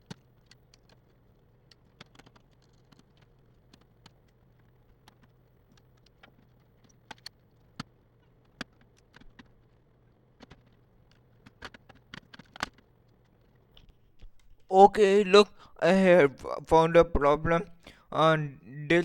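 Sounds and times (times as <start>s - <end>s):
tools clicking on laptop parts: 0.0s - 9.8s, 10.4s - 14.5s
faint low hum: 0.0s - 19.0s.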